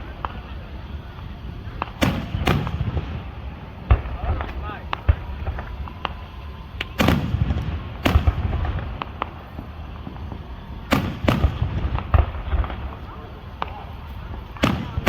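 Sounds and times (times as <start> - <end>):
fireworks booming: 0.0 - 15.0
fireworks popping: 0.0 - 15.0.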